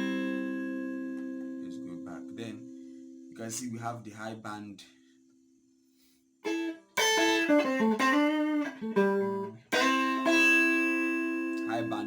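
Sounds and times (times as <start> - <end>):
electric guitar single notes: 0.0 - 2.8, 6.5 - 12.0
electric guitar chord ringing: 0.0 - 3.1, 7.0 - 12.0.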